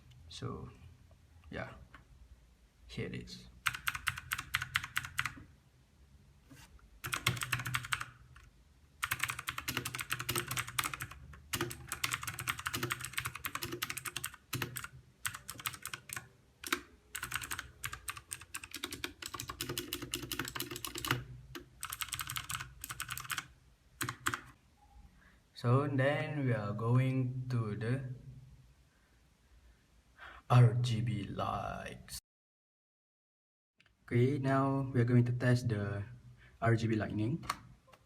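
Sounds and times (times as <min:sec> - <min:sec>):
mechanical keyboard clicky typing: 0:03.7 - 0:05.4, 0:07.0 - 0:24.6.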